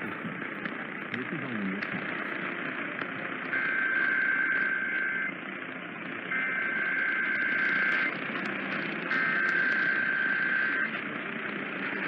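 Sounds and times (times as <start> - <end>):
radio hiss and static: 0.0 - 12.0
digital data tone bursts: 3.5 - 5.3, 6.3 - 8.2, 9.1 - 11.0.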